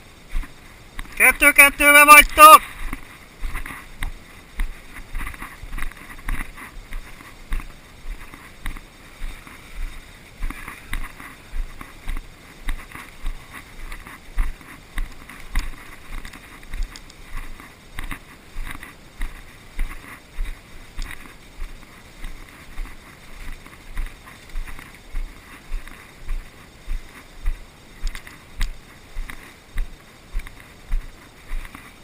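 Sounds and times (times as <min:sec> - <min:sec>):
crunchy footsteps: 0:00.0 - 0:32.0
clothing and gear rustling: 0:02.6 - 0:32.0.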